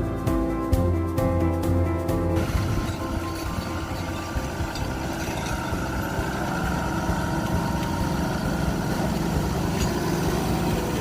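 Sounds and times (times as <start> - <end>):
light steady beat: 0.0 - 2.4
instrumental music with held notes: 0.0 - 11.0.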